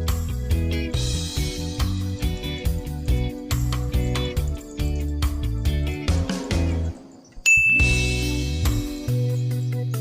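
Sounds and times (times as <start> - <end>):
music with bass line and beat: 0.0 - 7.1, 7.7 - 10.0
bright ding: 7.3 - 8.6.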